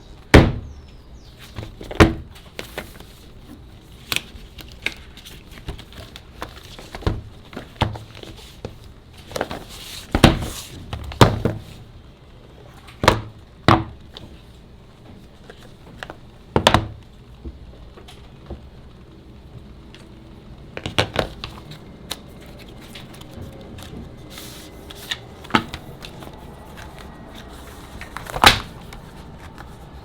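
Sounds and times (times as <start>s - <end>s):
packaging rustle: 1.5s - 10.9s, 20.8s - 30.0s.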